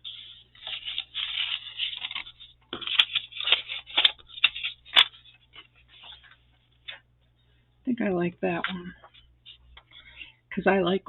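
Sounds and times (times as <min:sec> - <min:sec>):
paper rustling and crinkling: 0:00.0 - 0:07.0
sharp paper crackles: 0:00.1 - 0:06.4.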